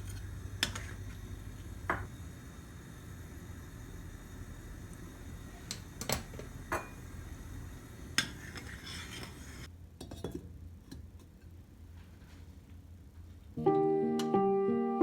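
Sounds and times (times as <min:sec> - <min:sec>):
clinks of crockery and utensils: 0:08.1 - 0:11.3.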